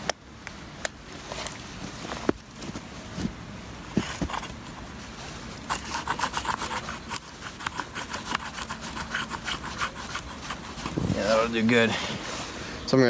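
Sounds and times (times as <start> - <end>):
hand saw rasping through wood: 5.7 - 12.2.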